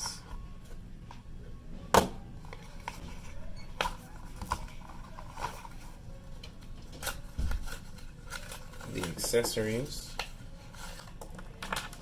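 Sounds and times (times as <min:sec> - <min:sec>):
packaging rustling: 0:02.5 - 0:12.0.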